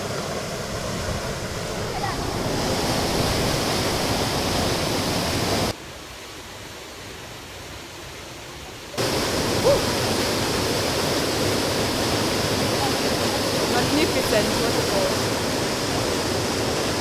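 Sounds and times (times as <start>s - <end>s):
waterfall rushing: 0.0s - 5.8s, 9.0s - 17.0s.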